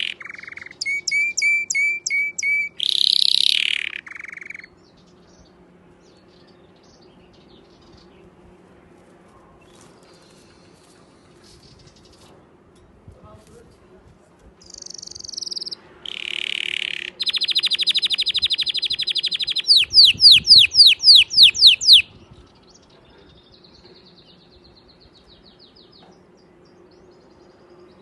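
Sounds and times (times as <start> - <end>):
canary singing: 0.0 - 5.4, 14.6 - 26.0.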